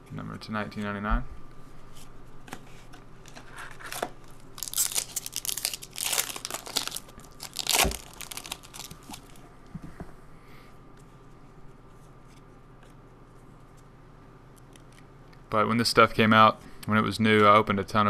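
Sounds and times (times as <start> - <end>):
wrapper tearing and crinkling: 3.2 - 9.4.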